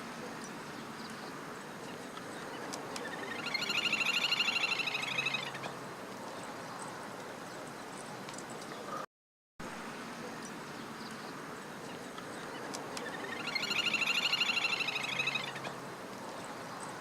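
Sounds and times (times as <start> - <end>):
bird whinnying trill: 3.0 - 5.6, 13.0 - 15.6.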